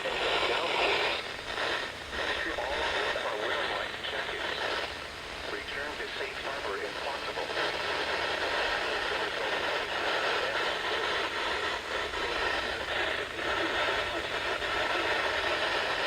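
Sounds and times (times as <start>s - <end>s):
radio static hiss: 0.0s - 16.0s.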